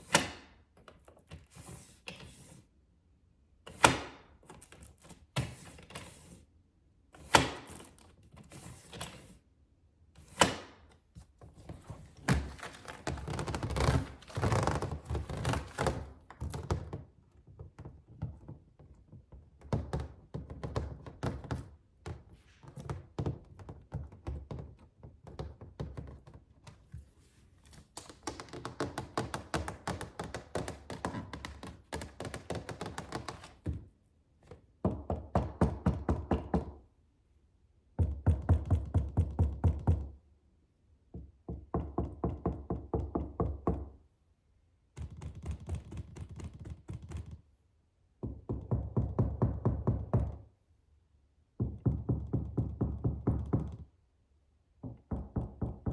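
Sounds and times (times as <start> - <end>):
fingers tapping on a suitcase: 28.0 - 33.8, 45.0 - 47.4.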